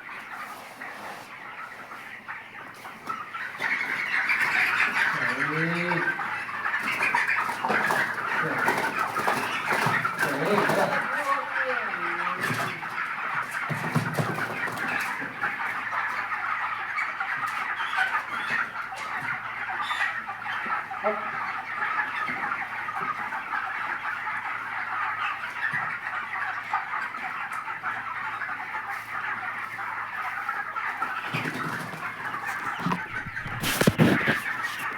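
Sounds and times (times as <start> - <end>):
chickens chirping and clucking: 0.0 - 34.9.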